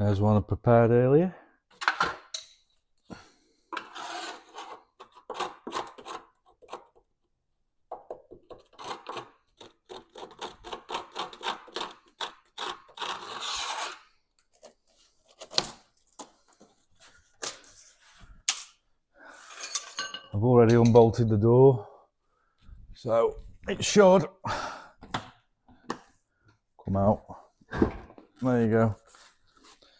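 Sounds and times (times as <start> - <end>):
scraping and rubbing: 3.8 - 6.8, 8.6 - 14.1.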